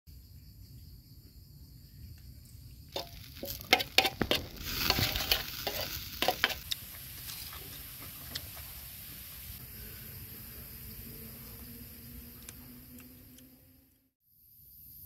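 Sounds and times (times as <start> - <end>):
food sizzling on hot rock: 2.9 - 9.6
sharp knocks and scraping clatter: 3.0 - 8.7.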